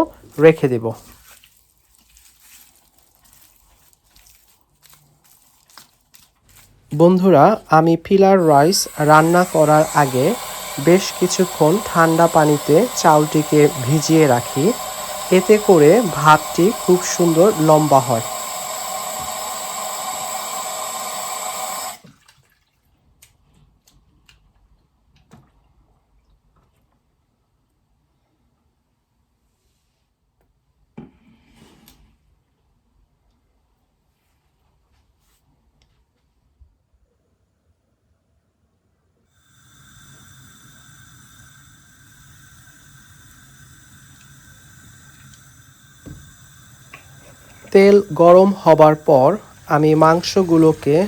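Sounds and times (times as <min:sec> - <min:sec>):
oil hissing in a pan: 0:07.0 - 0:22.0, 0:39.4 - 0:51.0
tap running into bowl: 0:45.2 - 0:46.3.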